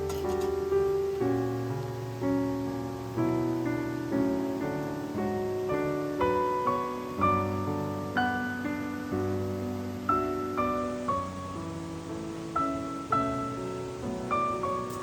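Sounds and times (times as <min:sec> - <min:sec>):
gentle piano music: 0:00.0 - 0:15.0.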